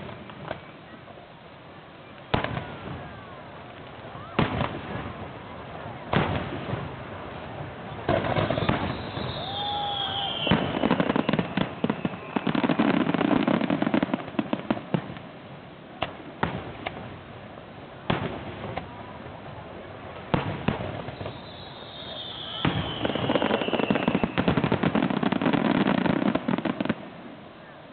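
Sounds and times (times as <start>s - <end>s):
firework crackling: 0.0s - 27.9s
firework bangs: 2.3s - 27.4s
firework falling whistle: 8.1s - 14.1s, 20.4s - 26.9s.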